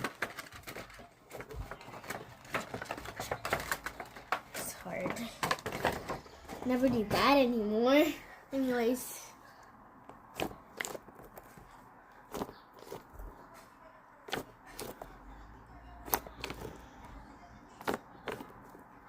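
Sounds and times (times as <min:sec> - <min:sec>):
handling taps and clicks: 0:00.0 - 0:06.2.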